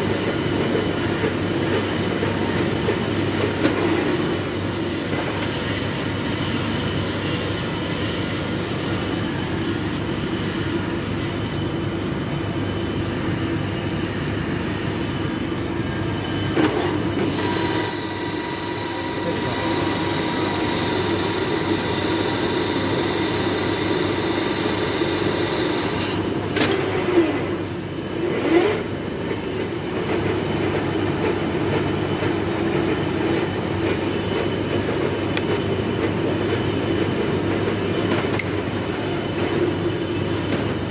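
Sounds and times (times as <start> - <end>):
lathe machine drone: 14.7 - 40.9.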